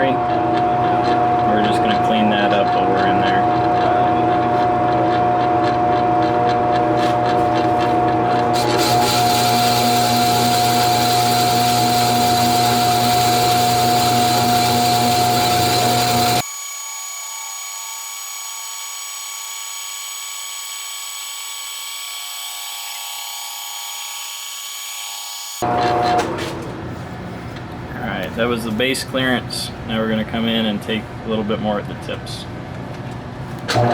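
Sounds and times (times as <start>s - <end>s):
metal-cutting machine whine: 0.0s - 26.3s.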